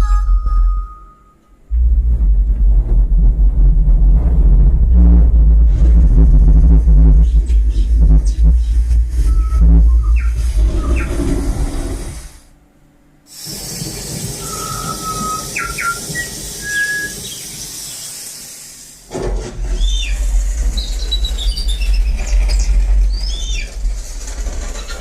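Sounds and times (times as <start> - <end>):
heavy deep bass: 1.6 - 12.5
high hiss with whistles and chirps: 13.3 - 19.1.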